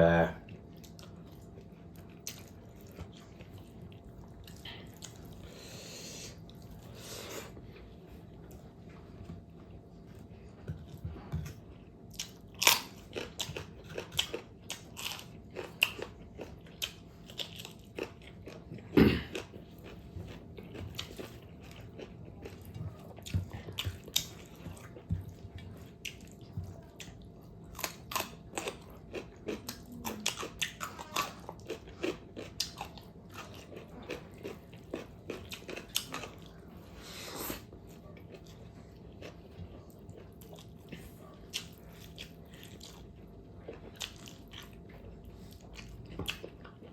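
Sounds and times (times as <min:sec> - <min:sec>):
person biting and chewing: 0:12.2 - 0:20.0.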